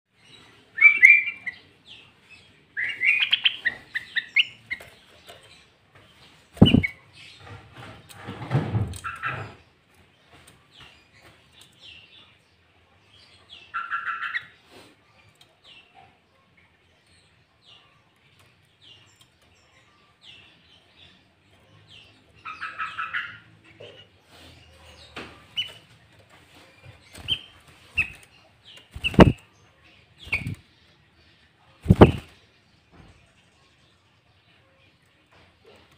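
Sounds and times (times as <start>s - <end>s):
bird singing: 0.1s - 7.9s, 15.2s - 35.9s
bird whistling song: 0.8s - 1.6s, 2.8s - 4.6s, 6.6s - 7.0s, 30.3s - 30.6s
loud dull thump: 6.6s - 6.8s
rapid bird chattering: 6.6s - 7.0s, 28.8s - 29.4s, 30.2s - 30.6s, 31.8s - 32.4s.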